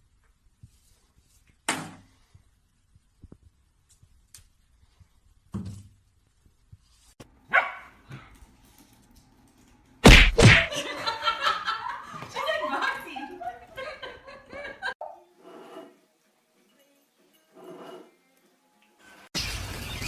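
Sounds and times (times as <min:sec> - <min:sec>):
dog barking: 0:07.5 - 0:08.0
loud sudden thump: 0:10.0 - 0:10.7.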